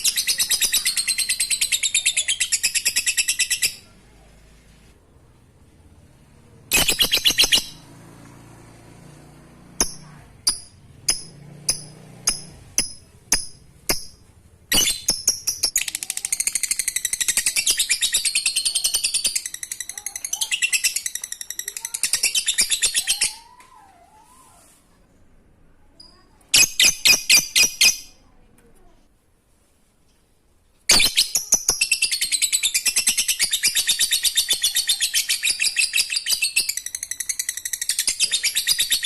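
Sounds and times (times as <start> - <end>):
lovebird chattering and chirping: 0.0 - 3.9, 6.7 - 7.8, 9.8 - 23.5, 26.0 - 28.2, 30.9 - 39.0.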